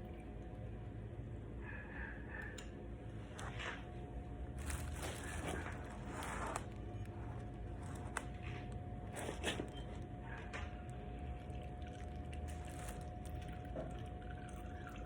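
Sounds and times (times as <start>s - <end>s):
crinkling rustling handling noises: 3.3s - 14.6s.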